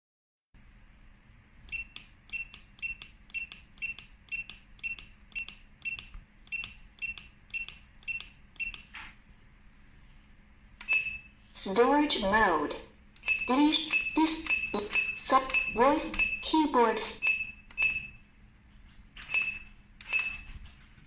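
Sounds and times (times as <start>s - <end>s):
keypad beeps: 1.7s - 8.9s, 10.8s - 11.3s, 13.2s - 18.2s, 19.2s - 20.6s
key clicks: 13.2s - 16.6s.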